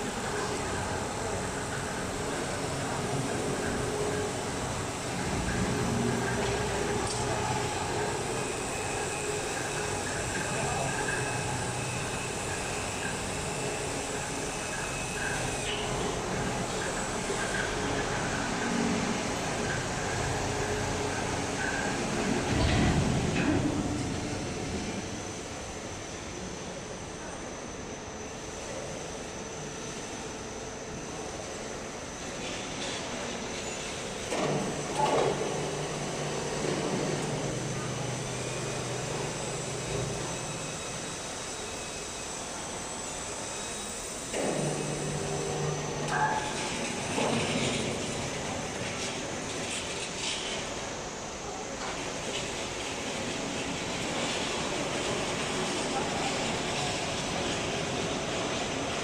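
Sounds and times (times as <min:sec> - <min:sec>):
saw machinery running: 0:00.0 - 0:25.8, 0:34.4 - 0:51.2
high-pitched machine tone: 0:02.7 - 0:18.0.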